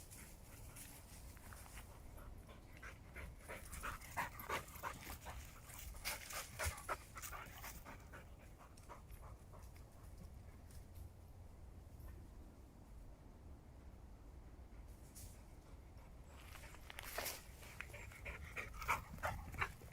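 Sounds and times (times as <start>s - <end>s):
dog panting: 1.9s - 10.1s, 17.8s - 19.9s.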